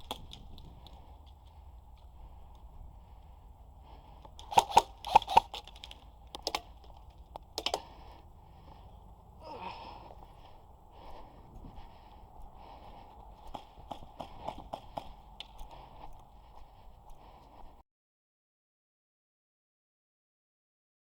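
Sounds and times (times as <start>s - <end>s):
wind rumbling on microphone: 0.0s - 5.1s, 5.9s - 17.8s
airsoft guns firing: 4.4s - 6.8s.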